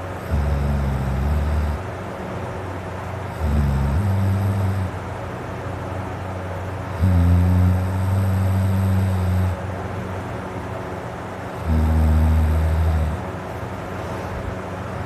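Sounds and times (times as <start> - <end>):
man snoring: 0.0 - 1.9, 3.3 - 5.0, 6.9 - 9.6, 11.5 - 13.3
background hiss: 0.0 - 15.0.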